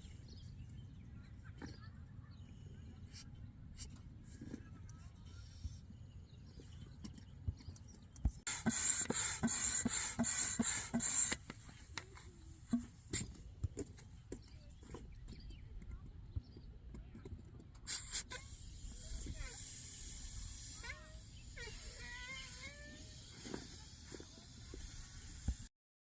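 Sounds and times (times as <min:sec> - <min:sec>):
hand air pump hissing strokes: 0:08.4 - 0:13.4, 0:17.9 - 0:25.7.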